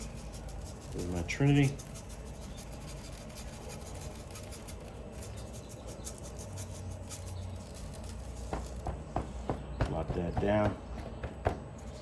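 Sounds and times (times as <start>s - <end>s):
scratchy rustles of rub on ribs: 0.0s - 9.3s.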